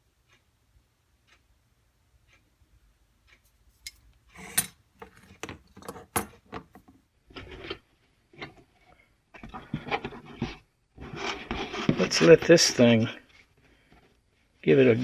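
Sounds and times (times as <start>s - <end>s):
metal tools clinking: 3.8s - 7.0s.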